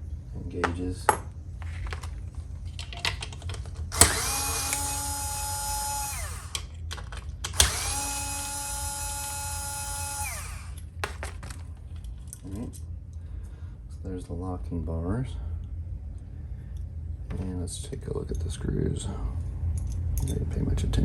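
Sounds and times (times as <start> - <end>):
electric screwdriver running: 3.9 - 6.7, 7.5 - 11.6.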